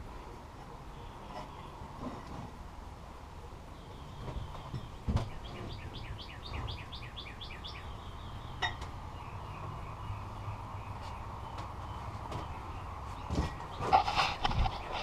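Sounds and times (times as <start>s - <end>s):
songbird trilling: 5.4s - 8.6s.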